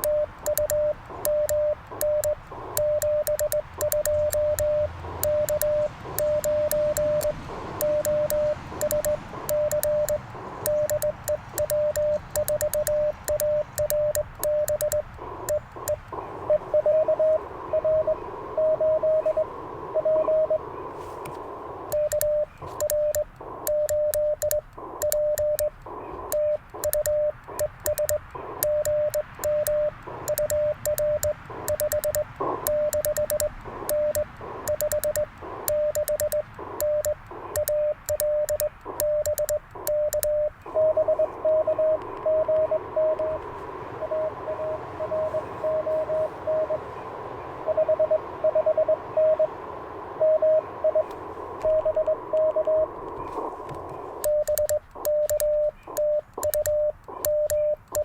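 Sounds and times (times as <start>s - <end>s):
paddle key clicks: 0.0s - 16.2s, 21.2s - 40.7s, 53.0s - 58.0s
morse code sidetone: 0.0s - 21.2s, 21.8s - 47.0s, 47.6s - 58.0s
morse code over radio: 0.0s - 58.0s
radio band hiss: 0.0s - 58.0s.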